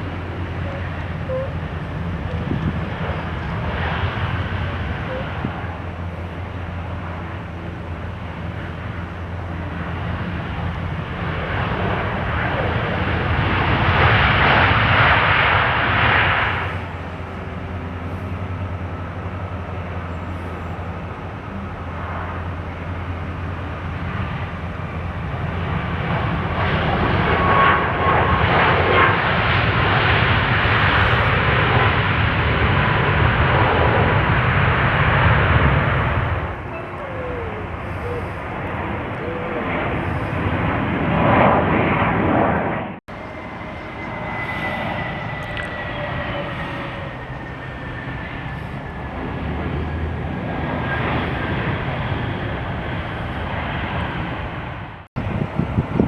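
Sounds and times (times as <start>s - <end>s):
faint steady whine: 0.0s - 11.3s, 16.4s - 25.8s
jet engine noise: 0.0s - 56.0s
steady low rumble: 0.0s - 56.0s.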